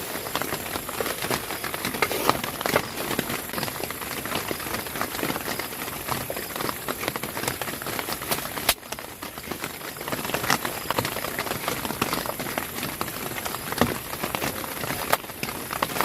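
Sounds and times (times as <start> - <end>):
rain pattering on a tent: 0.0 - 16.0.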